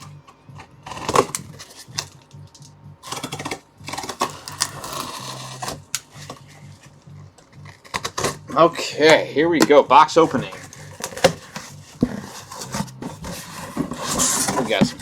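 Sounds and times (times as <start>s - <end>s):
scraping and rustling: 10.3s - 15.0s
cardboard box being opened: 10.4s - 15.0s.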